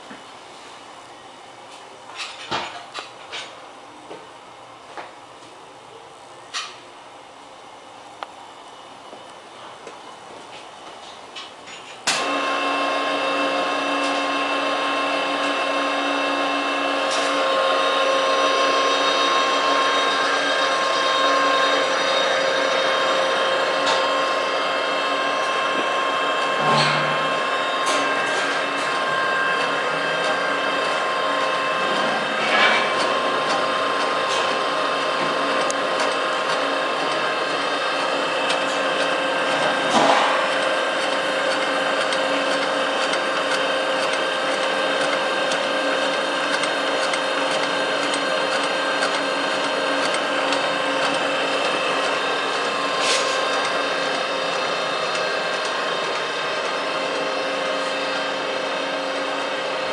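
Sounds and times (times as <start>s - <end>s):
machine motor hum with whining: 3.6s - 59.9s.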